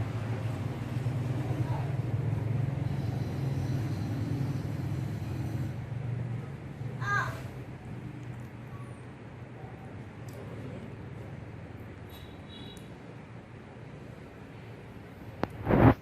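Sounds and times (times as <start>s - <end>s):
motor vehicle rumbling: 0.0s - 12.3s.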